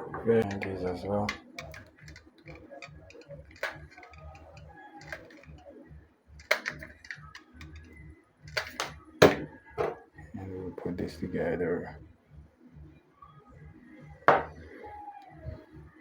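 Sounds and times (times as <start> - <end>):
battery cells clicking together: 1.3 - 5.6, 6.4 - 9.0.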